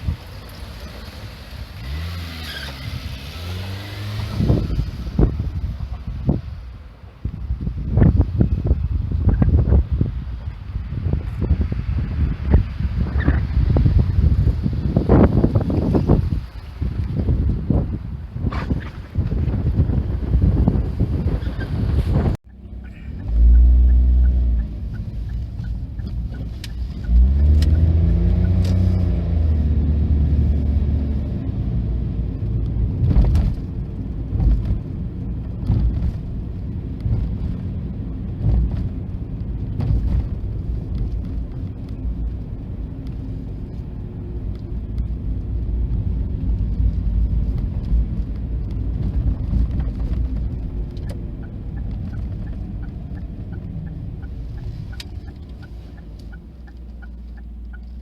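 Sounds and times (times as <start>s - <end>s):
low rumble: 2.8s - 58.0s
diesel railcar engine: 21.8s - 28.8s.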